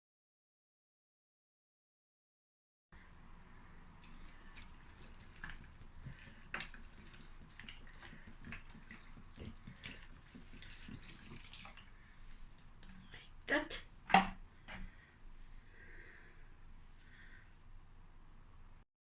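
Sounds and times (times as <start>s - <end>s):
water dripping onto soil: 3.0s - 14.9s.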